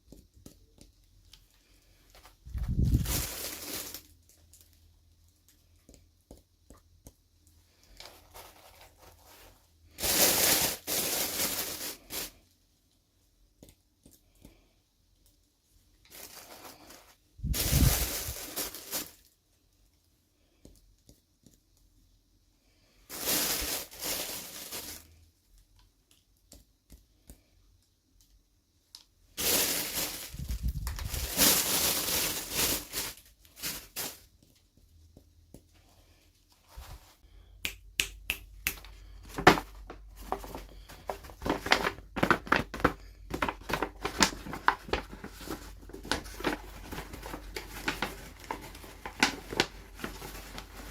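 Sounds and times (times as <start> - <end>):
packaging tearing and crinkling: 29.4 - 34.2, 39.4 - 50.9.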